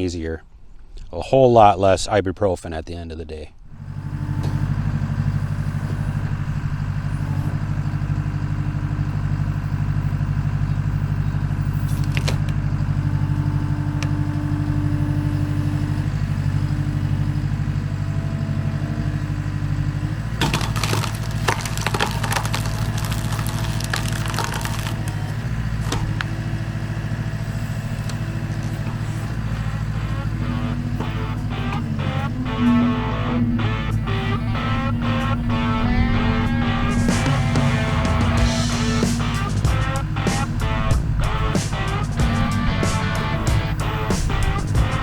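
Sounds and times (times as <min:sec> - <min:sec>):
skid steer engine running: 0:03.6 - 0:45.0
wood cracking and splintering: 0:11.8 - 0:13.0, 0:20.1 - 0:33.4.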